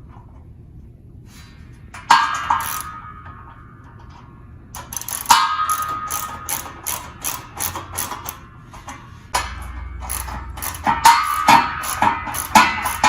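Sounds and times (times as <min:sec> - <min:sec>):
short metallic ring: 0:02.3 - 0:03.4, 0:04.9 - 0:08.5, 0:09.5 - 0:13.0
socket ratchet clicking: 0:02.6 - 0:02.9, 0:04.8 - 0:08.4, 0:10.1 - 0:13.0.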